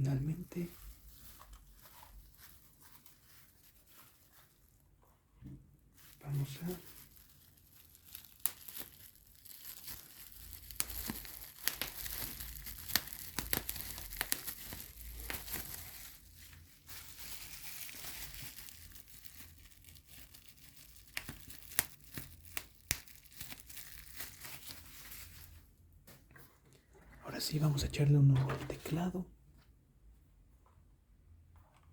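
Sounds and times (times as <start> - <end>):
packaging crinkling and tearing: 6.0 - 25.6
packaging snapping: 7.9 - 15.9.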